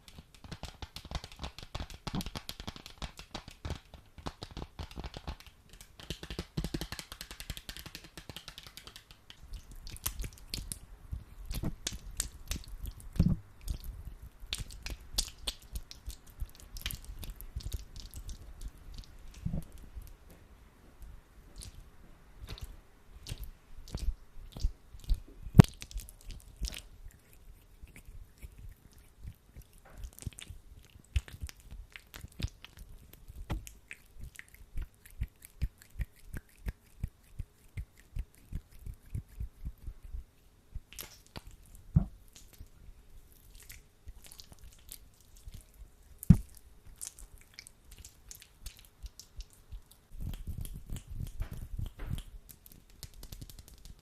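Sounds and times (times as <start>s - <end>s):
hands squishing sticky gel: 0.0s - 20.2s, 21.5s - 40.0s, 40.8s - 54.0s.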